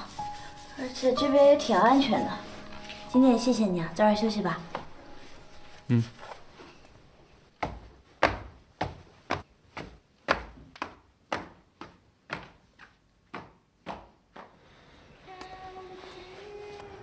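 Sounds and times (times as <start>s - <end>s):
footsteps on hard floor: 4.4s - 10.9s.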